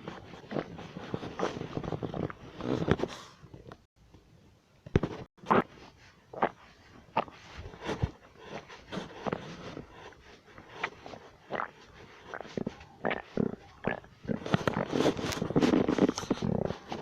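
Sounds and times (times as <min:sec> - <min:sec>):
stomach growling: 0:05.4 - 0:17.0.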